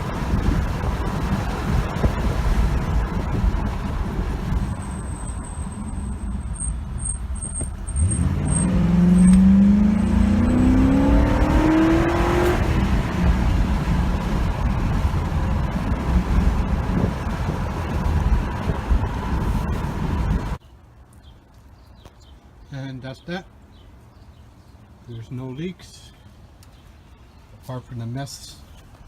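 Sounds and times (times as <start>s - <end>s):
car engine revving: 0.0s - 20.3s.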